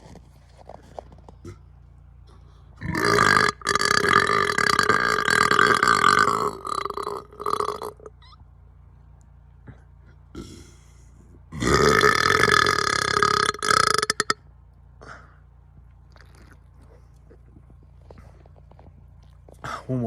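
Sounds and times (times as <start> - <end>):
man burping: 2.8 - 8.1, 9.7 - 14.4.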